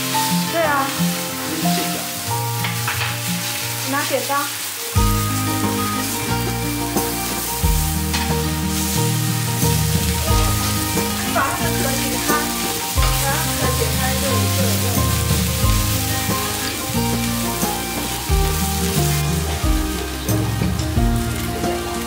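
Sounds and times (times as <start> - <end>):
food sizzling on a grill: 0.0 - 22.0
background music with bass line: 4.9 - 22.0.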